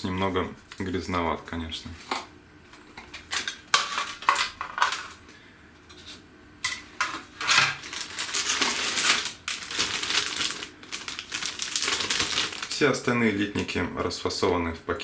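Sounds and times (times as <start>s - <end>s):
plastic parts rustling and scraping: 3.1s - 5.2s, 5.9s - 12.8s.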